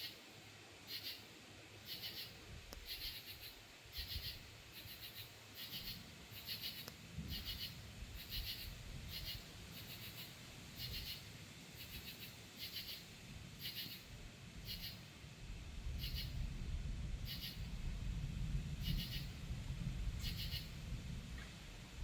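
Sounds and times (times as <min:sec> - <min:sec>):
insects chirping in pulses: 0:00.9 - 0:15.1, 0:17.2 - 0:17.7, 0:18.8 - 0:19.4, 0:20.2 - 0:20.8
faint low rumble: 0:13.2 - 0:22.0.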